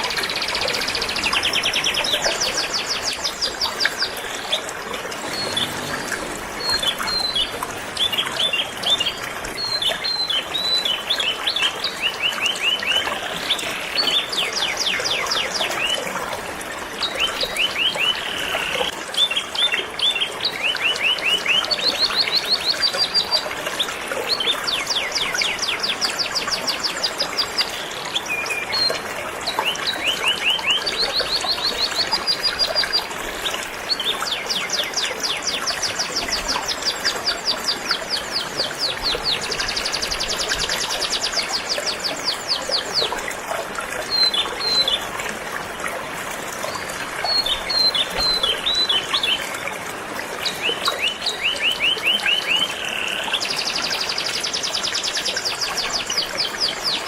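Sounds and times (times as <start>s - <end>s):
flowing river: 0.0s - 57.0s.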